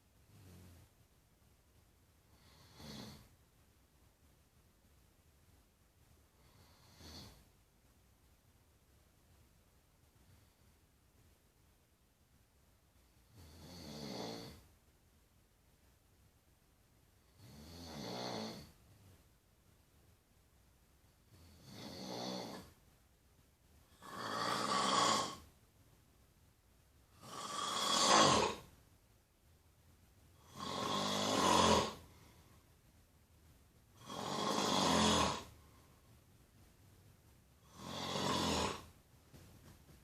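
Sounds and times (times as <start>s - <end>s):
loud snores: 2.4s - 3.3s, 6.4s - 7.4s, 13.3s - 14.6s, 17.3s - 18.8s, 21.4s - 22.7s, 23.9s - 25.5s, 27.1s - 28.7s, 30.4s - 32.2s, 34.0s - 35.6s, 37.6s - 38.9s.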